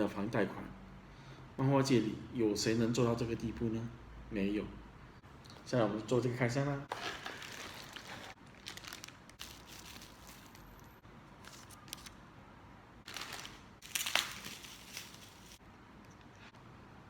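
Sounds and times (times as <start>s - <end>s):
cardboard and plastic rustling: 6.9s - 12.1s, 13.0s - 15.6s.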